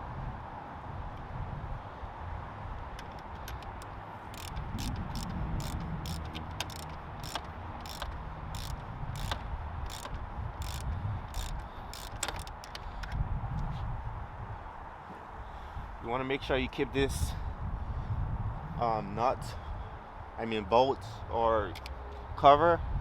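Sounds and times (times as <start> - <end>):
ratchet wrench clicking: 3.0 - 13.2.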